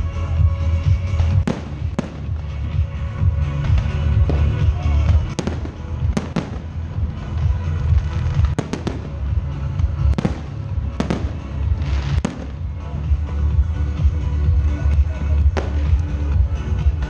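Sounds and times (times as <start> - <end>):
loud music with strong bass: 0.0 - 17.0
firework crackling: 1.1 - 3.0, 3.6 - 12.9.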